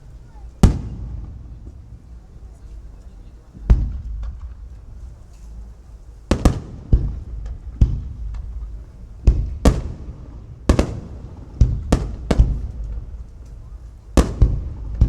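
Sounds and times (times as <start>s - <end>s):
firework shells booming: 0.0s - 15.0s.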